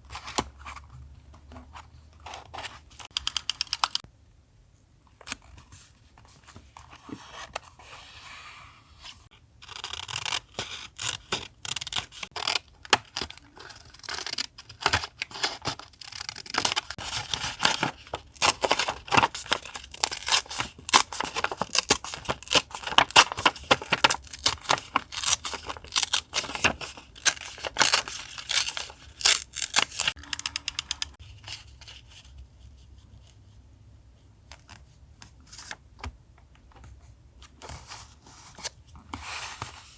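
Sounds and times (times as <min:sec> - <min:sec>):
paper rustling: 0:16.3 - 0:30.2.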